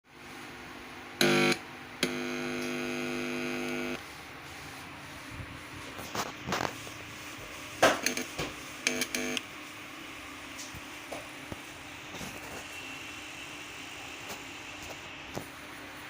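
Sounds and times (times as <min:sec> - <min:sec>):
electronic buzzing: 0:01.2 - 0:04.0, 0:08.0 - 0:09.4.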